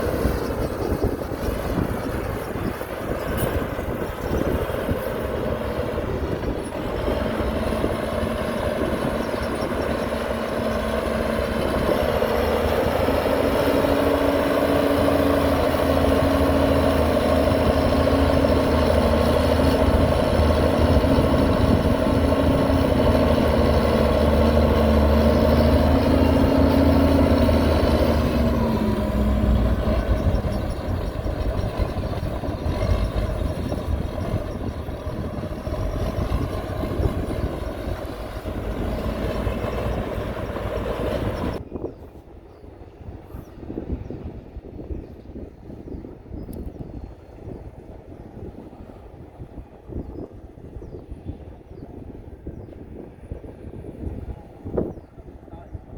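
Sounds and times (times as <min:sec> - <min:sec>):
heavy diesel engine running: 0:00.0 - 0:41.6.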